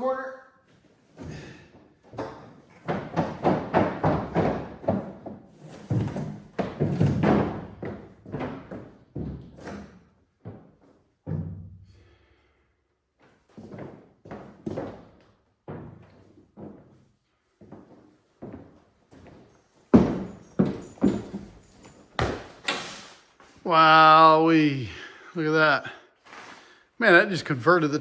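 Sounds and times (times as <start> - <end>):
rubber mat thudding: 19.9 - 22.6.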